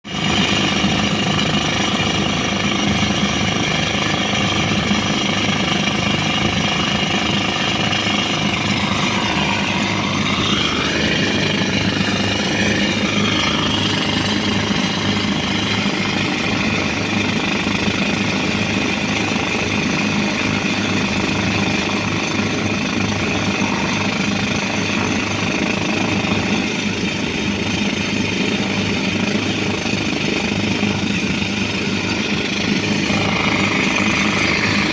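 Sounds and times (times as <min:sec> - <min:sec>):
pneumatic rock drill hammering stone: 0:00.0 - 0:34.9
air compressor engine running: 0:00.1 - 0:34.9.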